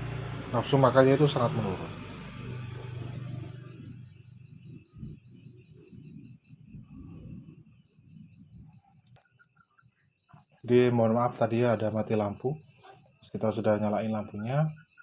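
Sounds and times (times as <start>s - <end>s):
cricket chirping: 0.0s - 15.0s
soft irregular low sounds: 2.4s - 13.6s.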